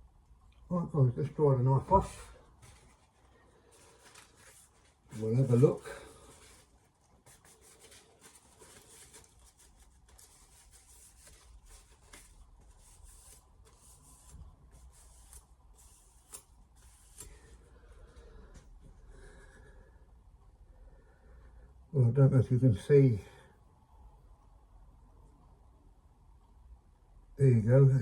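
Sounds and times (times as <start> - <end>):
cloth rubbing: 1.8 - 17.2.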